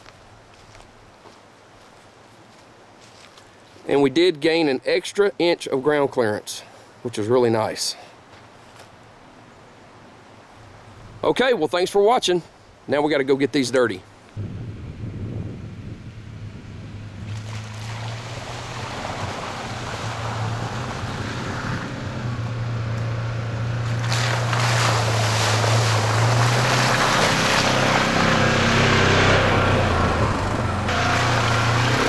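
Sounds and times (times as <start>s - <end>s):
tyre and wind noise: 14.4s - 32.0s
vehicle engine humming: 14.4s - 32.0s.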